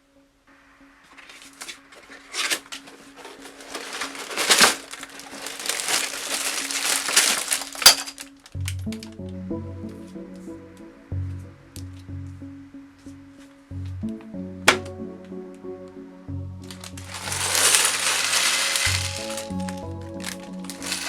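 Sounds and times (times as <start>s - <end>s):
music with low notes: 0.0s - 21.0s
plastic packaging crinkling: 1.1s - 9.0s, 16.6s - 21.0s.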